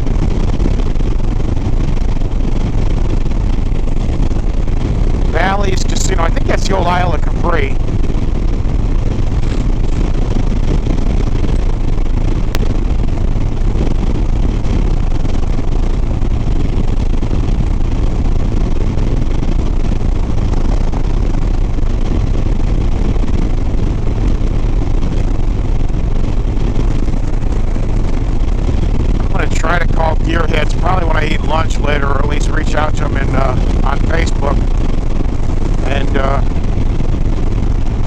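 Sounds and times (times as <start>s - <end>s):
wind rushing over microphone: 0.0s - 38.0s
motorcycle engine cruising: 4.8s - 13.2s.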